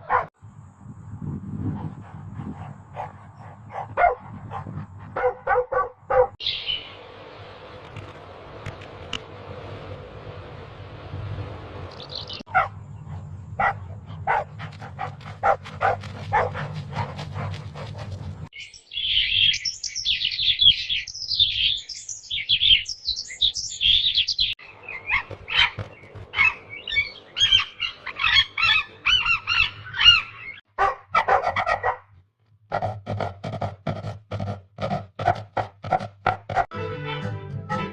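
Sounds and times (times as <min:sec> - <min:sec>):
low hum: 0:00.4 - 0:18.5
birds chirping and squawking: 0:06.1 - 0:07.1, 0:11.9 - 0:30.7.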